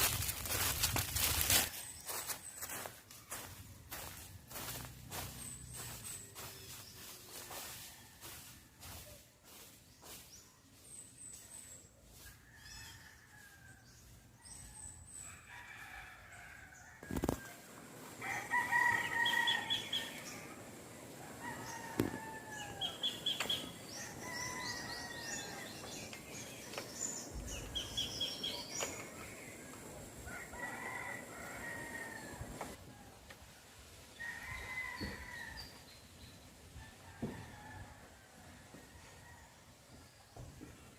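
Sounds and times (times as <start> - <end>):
roosters crowing: 12.2 - 33.2, 34.1 - 35.9, 36.7 - 39.9.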